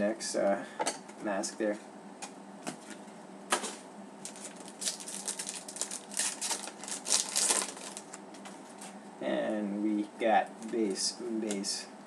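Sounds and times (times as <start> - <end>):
cards clicking and rustling: 3.5 - 8.6.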